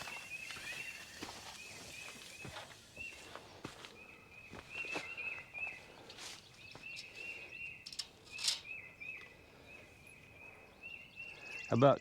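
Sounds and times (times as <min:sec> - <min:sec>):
soft footsteps on ground: 0:00.0 - 0:07.5.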